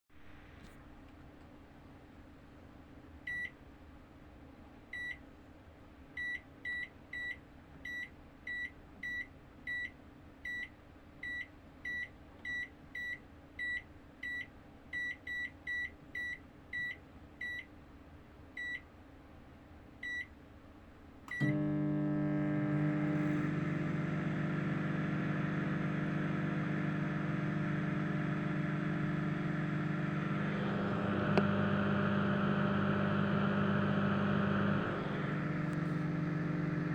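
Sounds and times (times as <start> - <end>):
microwave oven humming: 21.3 - 36.9.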